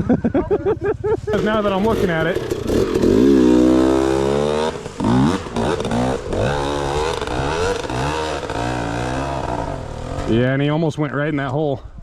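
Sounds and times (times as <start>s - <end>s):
dirt bike engine revving: 1.3s - 10.7s.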